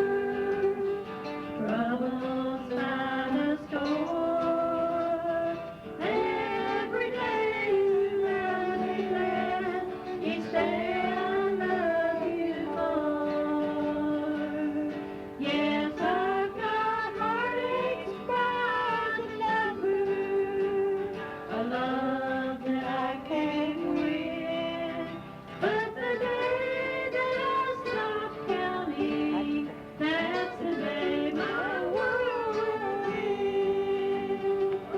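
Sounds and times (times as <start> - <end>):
instrumental accompaniment: 0.0 - 34.9.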